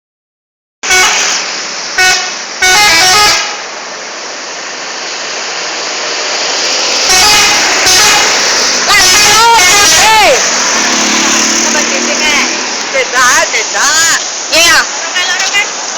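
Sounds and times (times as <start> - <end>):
musical air horn blasts: 0.8 - 1.4, 2.0 - 3.7, 7.0 - 10.1
road noise: 0.8 - 15.9.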